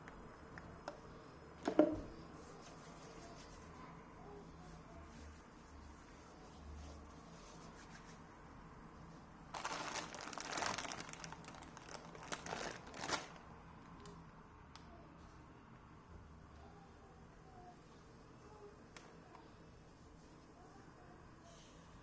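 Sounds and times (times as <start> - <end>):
crinkling rustling handling noise: 9.5 - 14.0.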